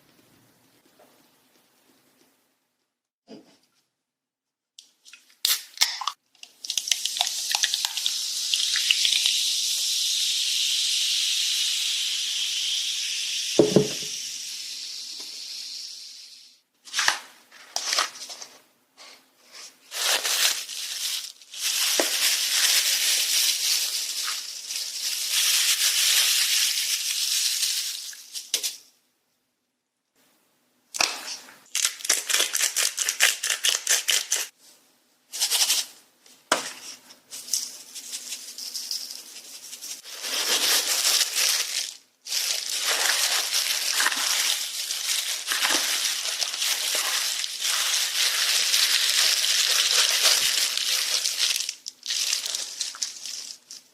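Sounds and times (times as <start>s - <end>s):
food sizzling in a pan: 7.2s - 16.6s
dull knock: 13.6s - 14.1s.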